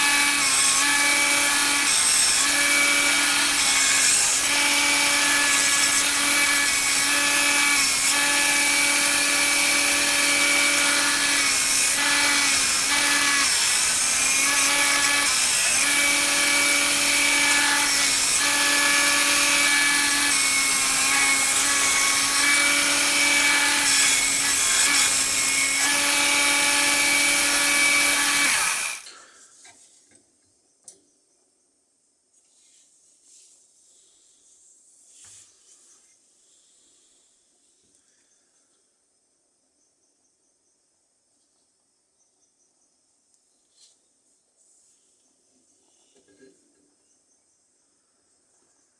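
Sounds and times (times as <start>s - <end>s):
power grinder grinding steel: 0.0s - 29.2s.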